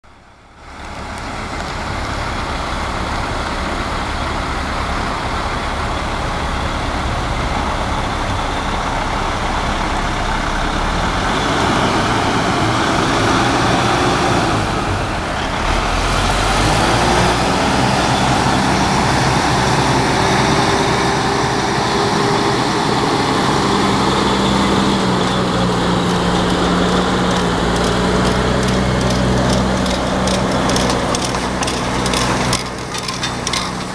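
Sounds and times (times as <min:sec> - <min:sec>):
truck diesel engine under load: 0:00.0 - 0:33.9.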